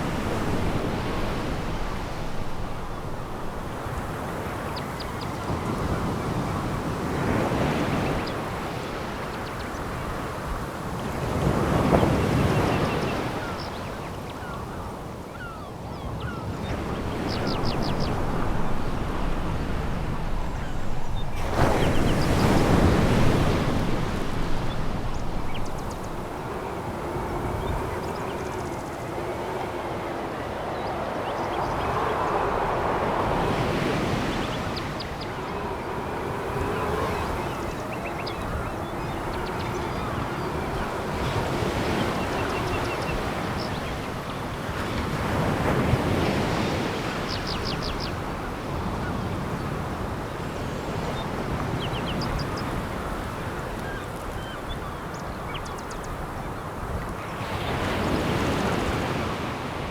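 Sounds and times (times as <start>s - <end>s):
faint wavering tones: 17.3s - 44.3s.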